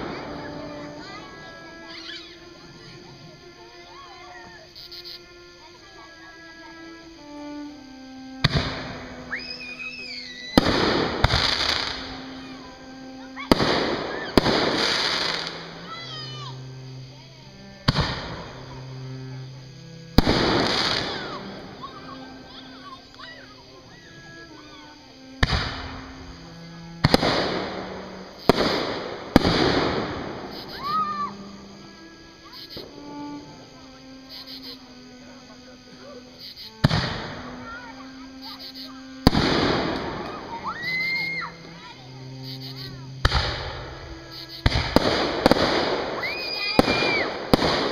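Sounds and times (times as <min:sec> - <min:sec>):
fireworks bangs with crackling hiss: 0:00.0 - 0:03.0, 0:08.4 - 0:17.1, 0:17.8 - 0:18.8, 0:20.1 - 0:22.6, 0:25.3 - 0:26.4, 0:27.0 - 0:33.7, 0:36.8 - 0:37.7, 0:39.2 - 0:41.8, 0:42.6 - 0:47.9
music with held notes: 0:00.0 - 0:09.4, 0:10.6 - 0:44.2.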